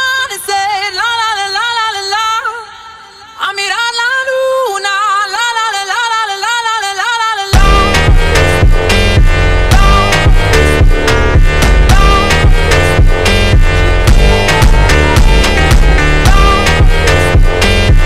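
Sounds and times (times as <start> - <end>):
electronic beat with heavy bass: 7.6 - 18.0.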